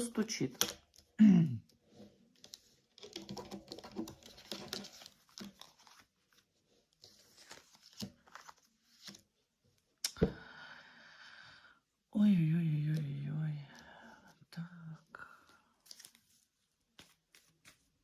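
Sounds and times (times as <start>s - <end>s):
cards rustling and sliding: 2.0s - 9.4s, 15.6s - 18.0s.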